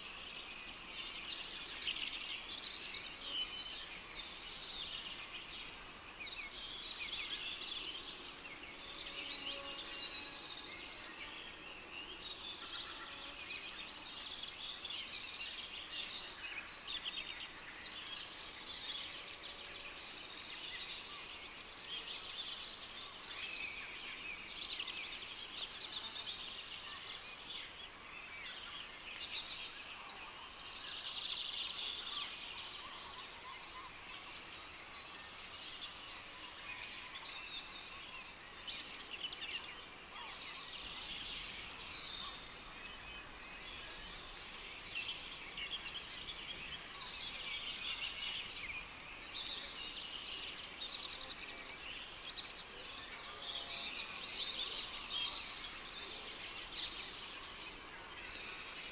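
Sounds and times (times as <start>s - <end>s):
cricket chirping: 39.6s - 54.6s, 55.3s - 58.8s.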